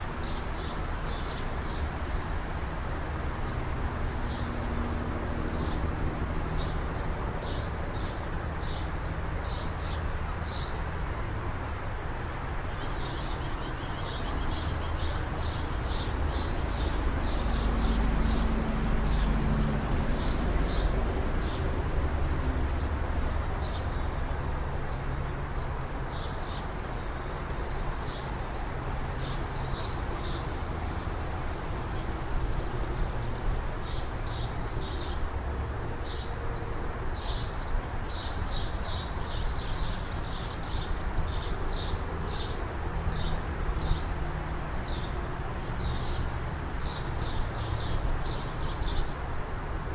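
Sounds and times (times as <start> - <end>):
small birds chirping: 12.7 - 19.4, 37.1 - 44.1, 44.8 - 49.7.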